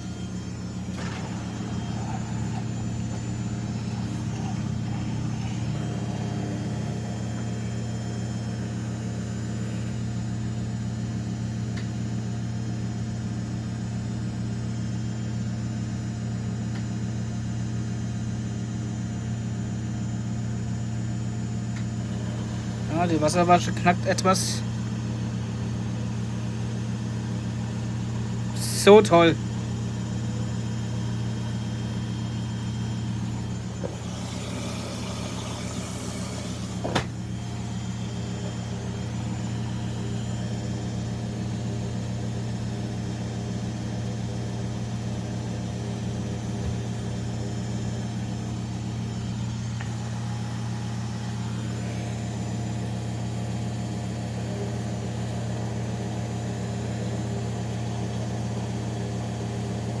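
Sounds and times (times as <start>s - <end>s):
washing machine hiss: 0.0s - 8.8s, 22.1s - 42.2s
washing machine humming: 0.0s - 60.0s.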